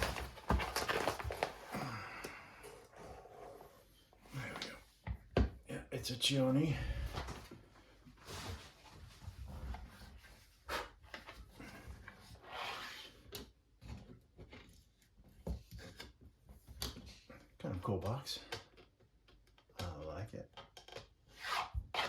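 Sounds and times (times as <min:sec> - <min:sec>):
packaging rubbing and sliding: 0:00.0 - 0:01.7.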